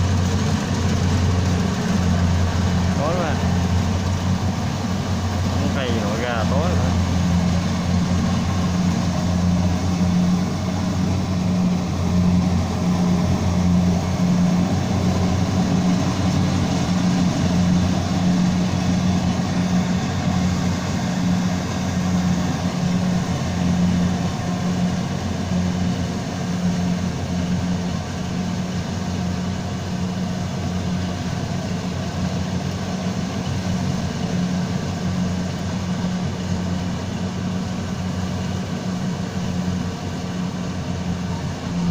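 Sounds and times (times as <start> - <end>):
harvester engine humming: 0.0 - 41.9.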